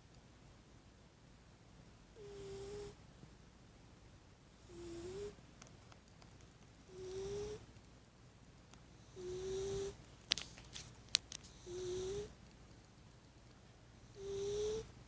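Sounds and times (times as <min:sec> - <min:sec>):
cat snoring: 0:02.2 - 0:03.0, 0:04.6 - 0:05.4, 0:06.9 - 0:07.7, 0:09.0 - 0:10.0, 0:11.5 - 0:12.4, 0:14.0 - 0:15.0.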